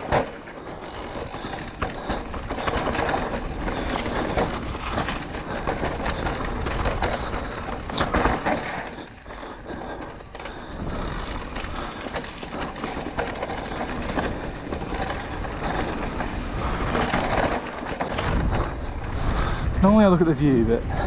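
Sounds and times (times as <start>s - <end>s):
bike frame rattling and knocking: 0.0s - 19.2s
bike tyre noise: 0.0s - 21.0s
wind rushing over microphone: 18.1s - 21.0s.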